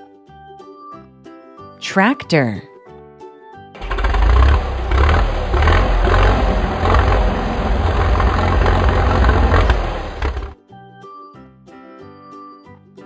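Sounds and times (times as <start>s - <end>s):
tractor engine running: 3.8s - 10.6s.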